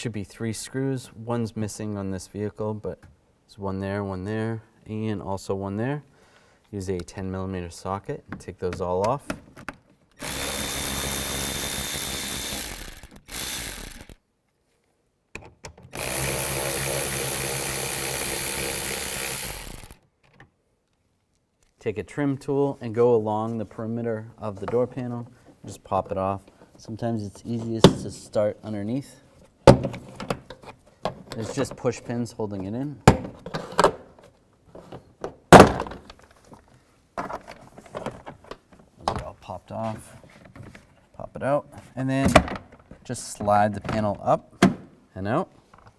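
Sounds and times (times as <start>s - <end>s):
power driver spinning: 10.2s - 14.2s, 16.0s - 20.0s.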